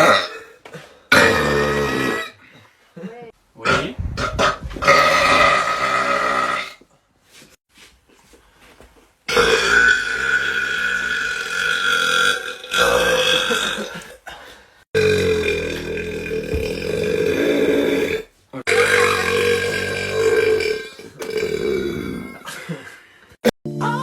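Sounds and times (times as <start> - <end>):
men burping loudly: 0.0 - 2.4, 3.7 - 6.8, 9.3 - 14.3, 15.0 - 23.0.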